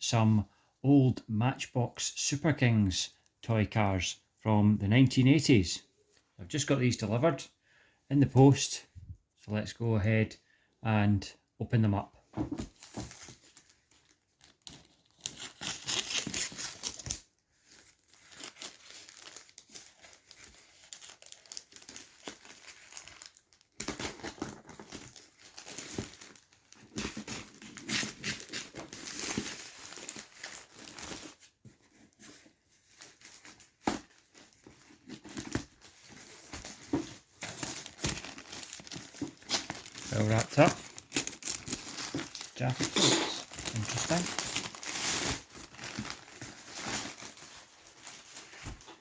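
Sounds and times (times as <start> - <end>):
paper tearing and rustling: 14.6 - 17.2, 37.4 - 48.9.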